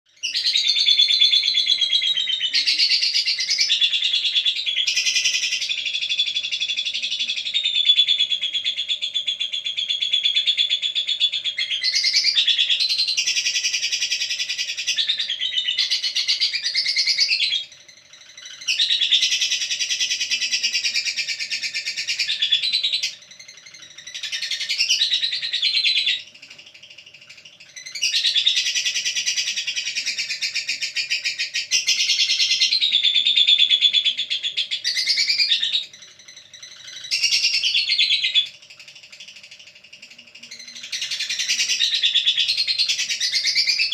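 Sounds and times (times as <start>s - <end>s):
bird twittering rapidly: 0.1s - 43.9s.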